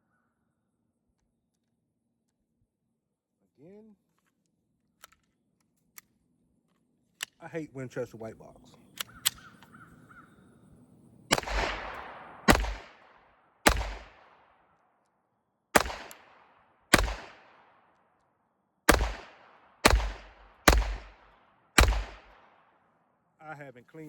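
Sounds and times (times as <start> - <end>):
pistol shots with echo: 11.3 - 14.6, 15.8 - 17.9, 18.9 - 22.7.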